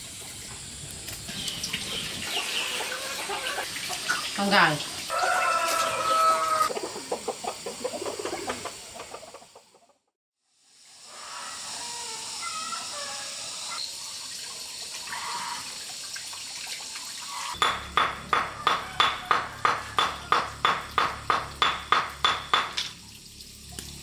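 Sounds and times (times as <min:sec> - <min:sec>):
even strikes: 0:17.6 - 0:23.0.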